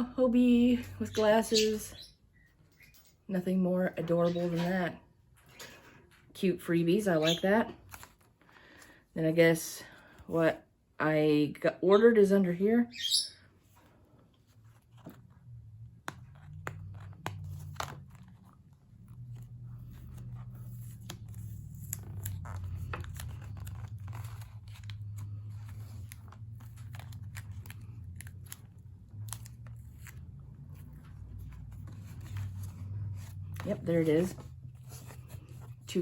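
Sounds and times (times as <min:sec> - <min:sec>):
packaging being unwrapped: 0:16.4 - 0:33.7.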